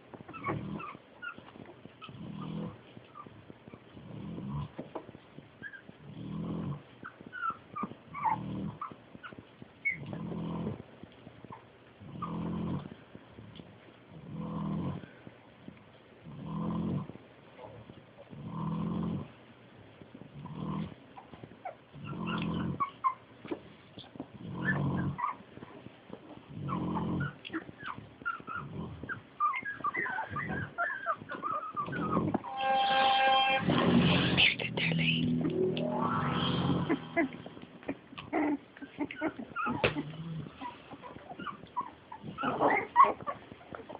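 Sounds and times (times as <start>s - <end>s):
puppies squeaking and whimpering: 0.1s - 10.3s, 21.2s - 43.9s
pig snoring: 0.4s - 1.0s, 2.0s - 2.8s, 4.0s - 4.8s, 5.6s - 7.3s, 8.1s - 9.0s, 9.8s - 11.0s, 12.0s - 15.3s, 16.2s - 17.2s, 18.3s - 19.4s, 20.3s - 21.0s, 22.0s - 22.9s, 24.3s - 25.4s, 26.4s - 32.4s, 35.9s - 43.2s.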